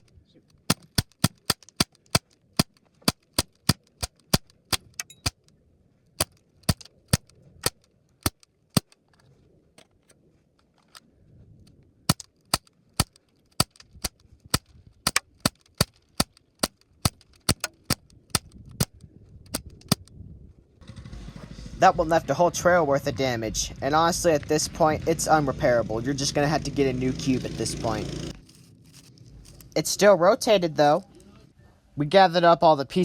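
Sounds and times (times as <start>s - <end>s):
bb gun shots: 0.7s - 5.4s, 6.2s - 9.0s, 12.1s - 20.0s.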